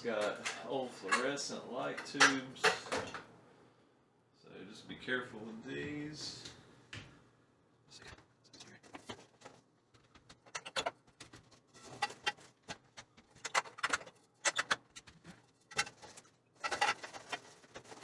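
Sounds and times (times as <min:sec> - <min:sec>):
fluorescent tubes clicking and rattling: 0:00.1 - 0:03.3, 0:10.3 - 0:11.0, 0:13.3 - 0:18.0.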